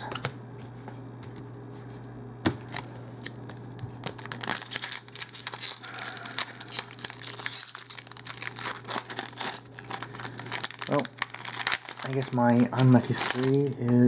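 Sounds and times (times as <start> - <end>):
foil wrapper crinkling and tearing: 2.7 - 13.9.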